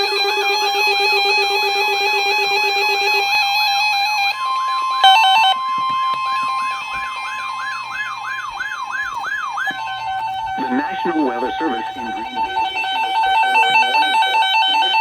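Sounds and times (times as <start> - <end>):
steady high attention tone: 5.0 - 15.0
stepped electronic beeps: 5.0 - 15.0.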